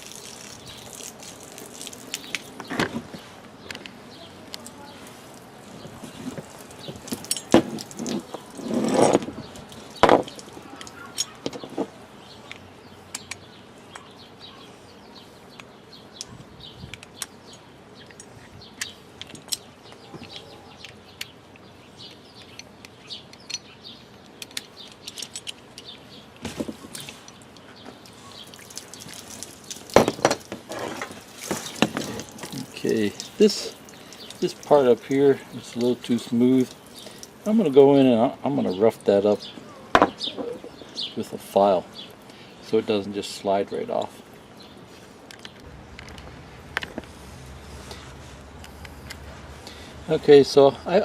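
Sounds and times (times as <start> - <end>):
birds chirping: 0.0 - 51.0
garden hose handling knocks: 10.0 - 11.9, 29.0 - 33.4.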